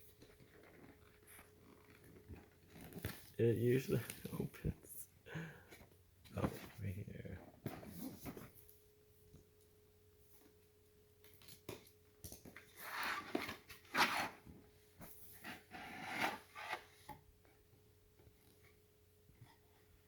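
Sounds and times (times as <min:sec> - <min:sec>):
faint steady hum: 0:00.0 - 0:20.0
packaging scraping and rustling: 0:12.6 - 0:14.5.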